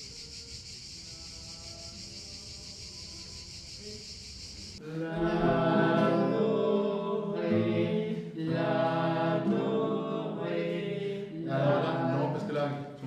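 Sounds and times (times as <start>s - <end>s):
voices singing held notes: 4.8s - 13.0s.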